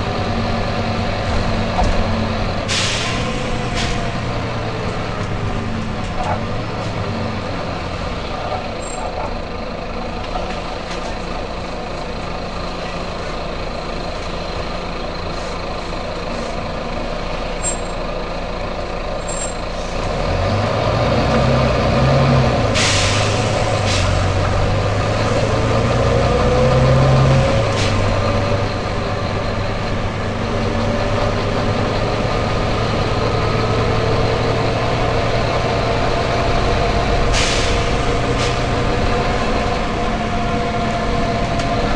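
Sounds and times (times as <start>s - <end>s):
bus diesel engine: 0.0s - 41.9s
air brake hiss: 2.7s - 4.2s, 22.7s - 24.3s, 37.3s - 38.7s.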